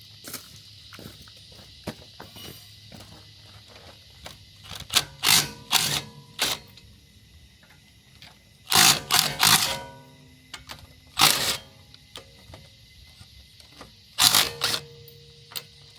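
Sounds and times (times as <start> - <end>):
impact wrench rattling: 4.6 - 6.8, 8.7 - 11.8, 14.2 - 15.9.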